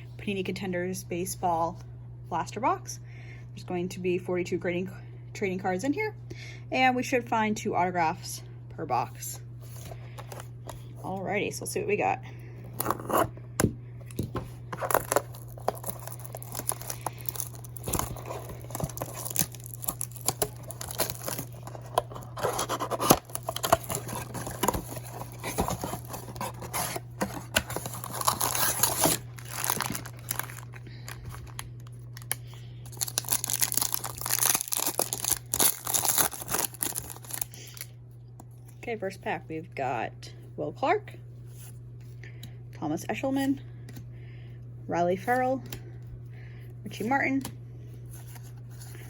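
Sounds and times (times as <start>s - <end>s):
low steady hum: 0.0s - 49.0s
packaging torn and crinkled: 14.8s - 37.9s.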